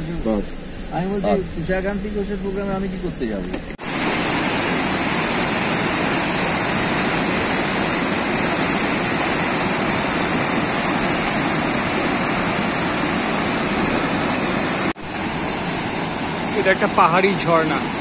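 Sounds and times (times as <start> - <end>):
waterfall roaring: 3.7 - 18.0.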